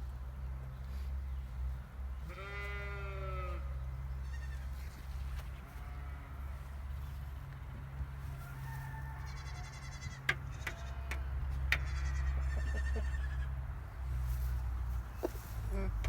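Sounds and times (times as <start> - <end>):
livestock bleating: 2.2 - 4.8, 5.6 - 6.7, 9.3 - 13.6.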